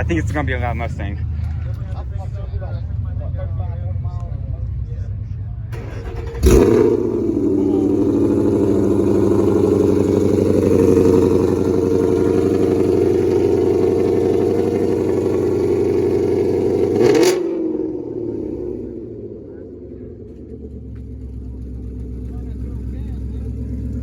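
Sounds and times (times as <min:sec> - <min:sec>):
car engine idling loudly: 0:00.0 - 0:24.0.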